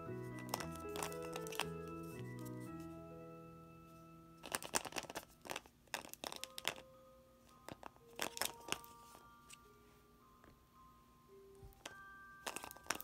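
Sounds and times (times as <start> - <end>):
soft chiming music: 0.0 - 4.5, 6.8 - 13.0
wrapping crinkles and clicks: 0.3 - 2.7, 4.4 - 6.9, 7.6 - 9.6, 11.7 - 13.0.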